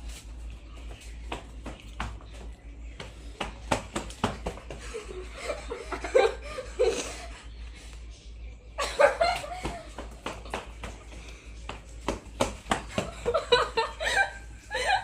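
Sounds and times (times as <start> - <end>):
people laughing: 4.6 - 7.6, 8.8 - 10.5, 12.8 - 15.0.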